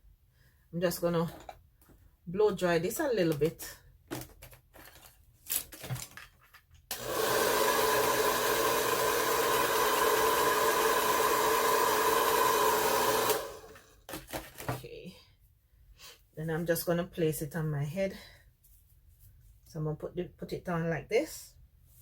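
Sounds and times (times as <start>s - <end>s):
hair dryer blowing: 6.9s - 13.8s.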